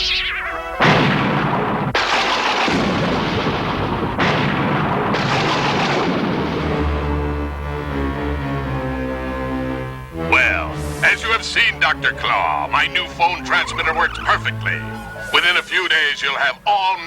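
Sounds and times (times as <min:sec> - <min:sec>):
loud cartoon blasts: 0:00.0 - 0:16.3
low music with held notes: 0:05.2 - 0:16.8.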